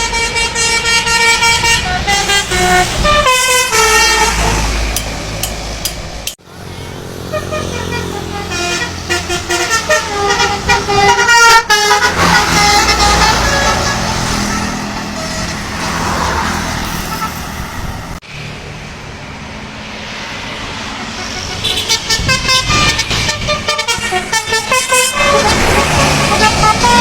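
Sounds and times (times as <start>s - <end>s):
bus musical horn playing a tune: 0.0s - 4.8s, 7.2s - 15.9s, 21.0s - 27.0s
bus engine: 0.0s - 27.0s
road noise: 0.0s - 27.0s.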